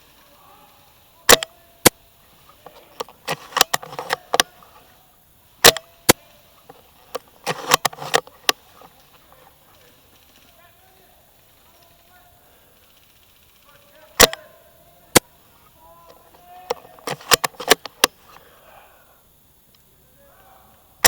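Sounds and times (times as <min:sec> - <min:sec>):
airsoft rifle sharp snaps: 0:01.3 - 0:02.0, 0:02.6 - 0:04.7, 0:05.6 - 0:06.2, 0:14.2 - 0:14.5, 0:16.6 - 0:18.2
rifle bolt clicks and rattles: 0:02.6 - 0:04.8, 0:05.6 - 0:09.6, 0:16.1 - 0:18.4.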